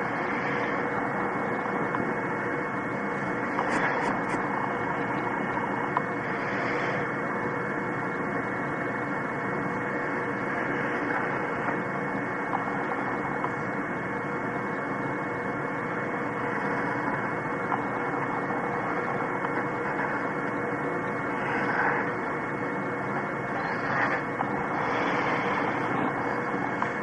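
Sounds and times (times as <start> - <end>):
electrical hum with hiss: 0.0 - 27.0.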